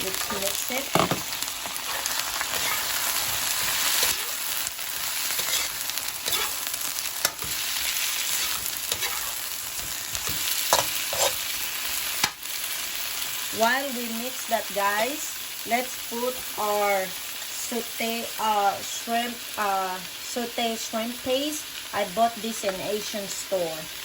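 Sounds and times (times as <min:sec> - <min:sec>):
spatula scraping a wok: 0:00.0 - 0:12.4
shrimp sizzling in hot oil: 0:00.0 - 0:24.0.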